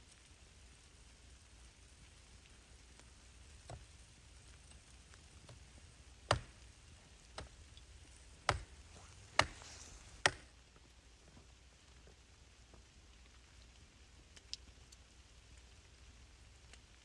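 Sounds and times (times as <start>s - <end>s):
faint hiss: 0.0s - 17.0s
sharp knocks: 6.3s - 7.6s, 8.5s - 10.4s.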